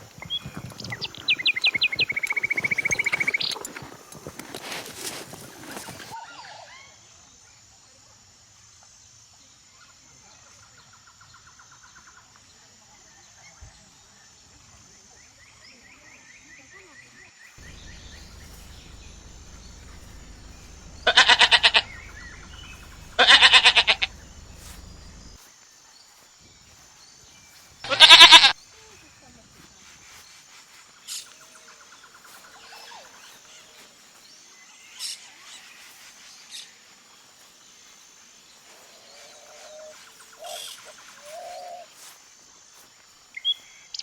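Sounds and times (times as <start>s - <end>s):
goats bleating: 17.6s - 25.4s, 27.9s - 28.6s.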